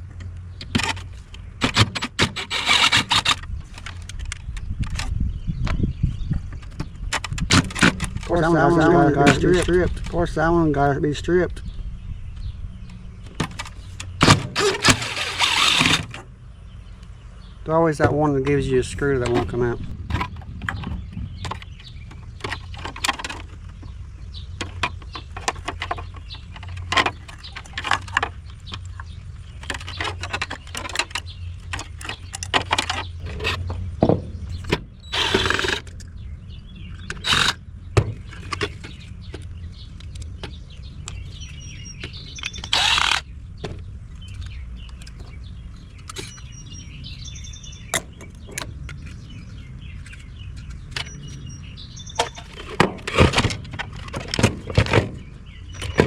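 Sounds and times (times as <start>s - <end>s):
clicks and knocks of parts: 0.1s - 5.8s, 6.5s - 8.5s, 18.0s - 24.0s, 24.6s - 36.1s, 36.9s - 41.3s, 41.9s - 46.5s, 52.1s - 56.0s
plastic and metal scraping: 0.6s - 10.5s, 13.2s - 16.3s, 17.9s - 36.2s, 36.9s - 46.9s, 47.6s - 56.0s.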